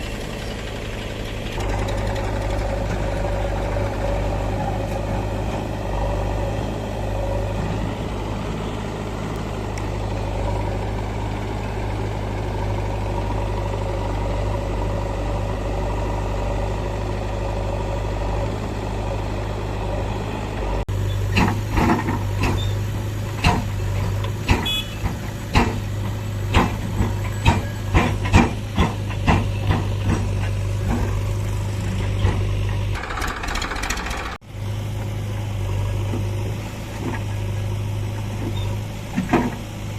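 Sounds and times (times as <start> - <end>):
heavy diesel engine running: 0.0 - 39.9
sharp irregular knocks: 26.5 - 31.2.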